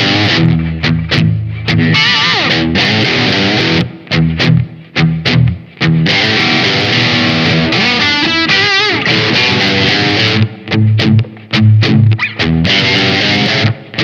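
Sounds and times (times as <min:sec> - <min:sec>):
distorted electric guitar chords: 0:00.0 - 0:14.0.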